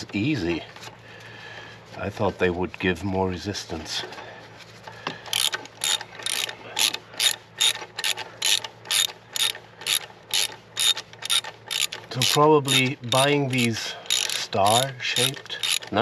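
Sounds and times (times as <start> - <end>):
ratchet wrench clicking: 5.3 - 16.0.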